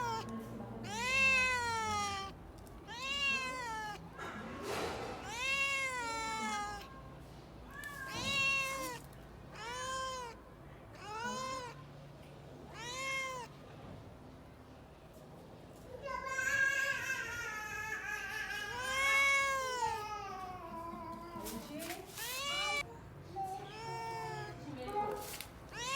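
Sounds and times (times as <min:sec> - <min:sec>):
cat meowing: 0:00.0 - 0:07.1, 0:07.7 - 0:11.9, 0:12.7 - 0:13.6, 0:17.3 - 0:20.7, 0:22.2 - 0:22.9, 0:23.6 - 0:25.9.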